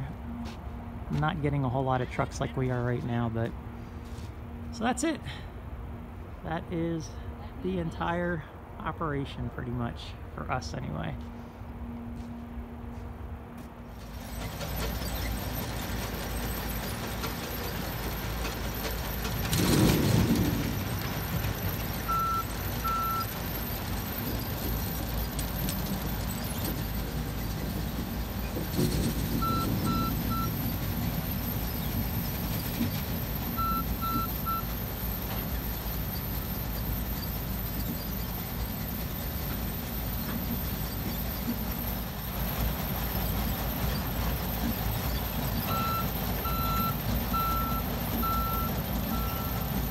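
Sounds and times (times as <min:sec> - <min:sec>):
heavy machinery rumble: 0:13.9 - 0:49.9
reversing alarm beeping: 0:14.8 - 0:27.6, 0:29.3 - 0:42.4, 0:45.1 - 0:49.9.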